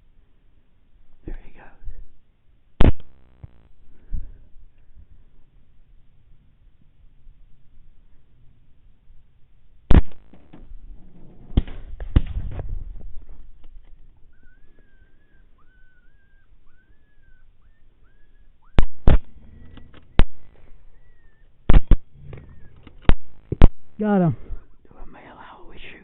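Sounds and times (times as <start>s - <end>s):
rifle shots: 2.8s - 3.8s, 9.9s - 10.8s, 18.8s - 22.1s, 23.0s - 24.0s
faint whistled notes: 14.3s - 18.8s, 20.8s - 21.6s.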